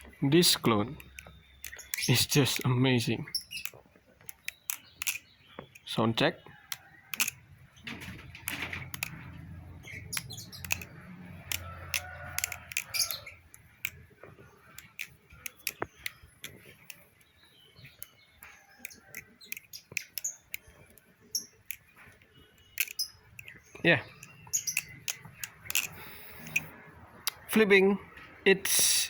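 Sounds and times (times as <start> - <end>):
butterfly knife clicking: 4.3 - 5.9, 6.7 - 7.4, 9.9 - 14.0, 22.7 - 26.7.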